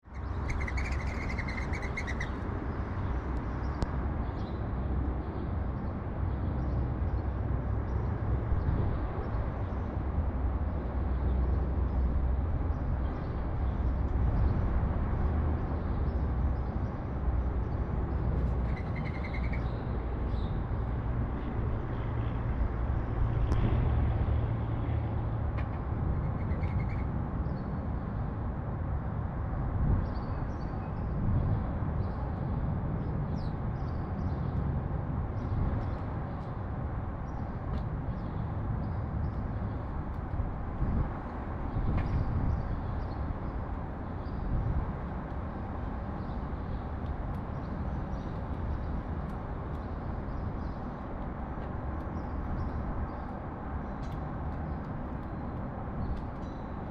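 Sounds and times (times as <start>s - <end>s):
city traffic rumble: 0.0s - 56.9s
sparrows chirping: 0.1s - 3.8s, 18.6s - 20.7s, 26.3s - 27.7s.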